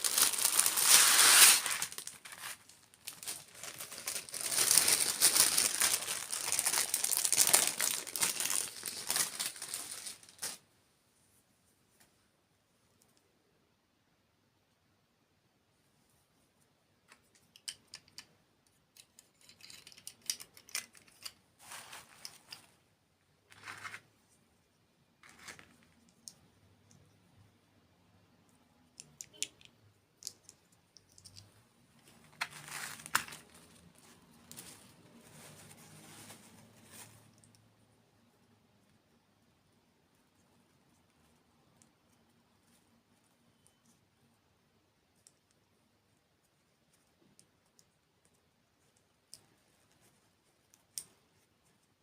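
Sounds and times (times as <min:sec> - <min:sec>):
crinkling and crackling: 0:00.0 - 0:10.6, 0:17.0 - 0:24.4, 0:25.2 - 0:27.2, 0:28.9 - 0:37.7.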